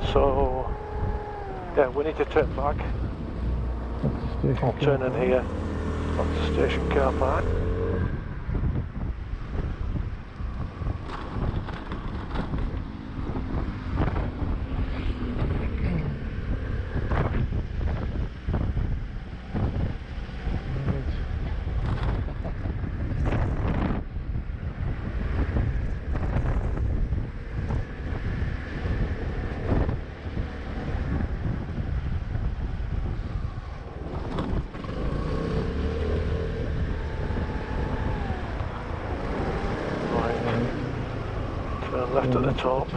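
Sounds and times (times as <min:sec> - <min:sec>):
car interior rumble: 0:00.0 - 0:09.0, 0:29.0 - 0:42.9.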